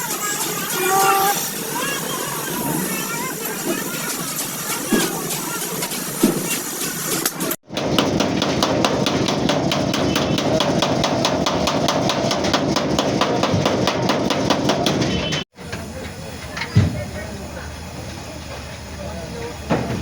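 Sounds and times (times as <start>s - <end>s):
hammering on sheet metal: 7.7s - 15.4s.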